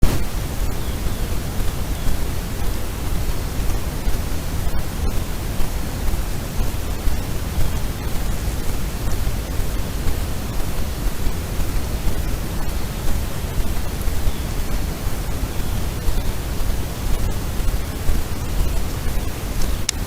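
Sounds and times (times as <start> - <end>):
loud steady hiss: 0.0 - 20.0.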